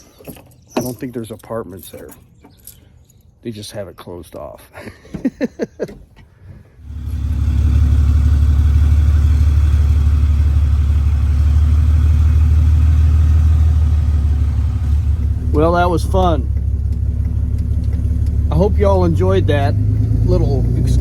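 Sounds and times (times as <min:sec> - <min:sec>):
diesel engine starting and rumbling: 0:05.1 - 0:21.0.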